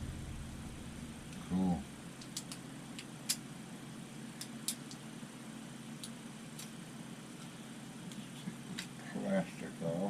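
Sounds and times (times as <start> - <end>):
steady low hum: 0.0 - 10.0
light clicks from handled parts: 2.2 - 3.4.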